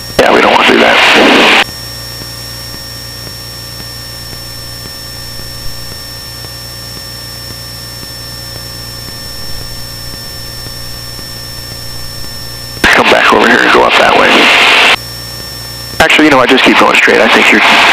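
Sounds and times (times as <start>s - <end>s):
piston aircraft engine droning: 0.0s - 15.0s
thin high-pitched whine: 3.2s - 15.0s.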